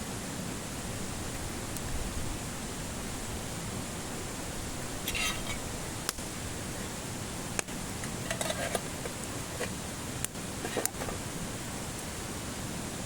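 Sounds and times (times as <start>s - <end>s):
campfire crackling and popping: 5.0s - 12.1s.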